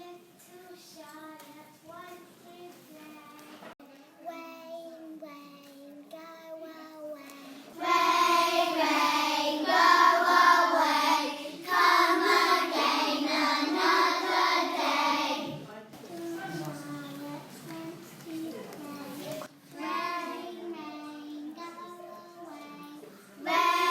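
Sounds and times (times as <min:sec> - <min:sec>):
children singing in unison: 0:07.8 - 0:15.6, 0:19.7 - 0:22.6, 0:23.4 - 0:23.9.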